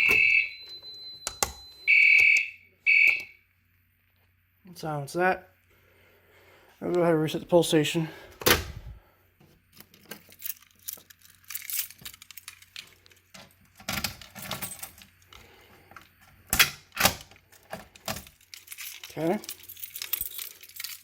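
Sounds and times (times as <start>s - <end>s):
clatter of handling: 9.7s - 15.2s
keys jangling: 9.8s - 13.2s, 14.0s - 15.1s, 17.5s - 21.0s.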